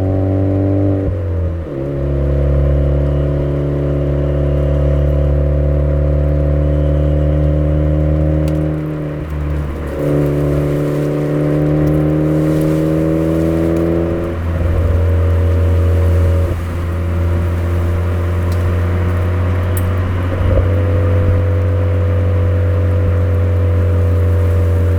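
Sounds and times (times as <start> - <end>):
car engine driving: 0.0 - 24.9.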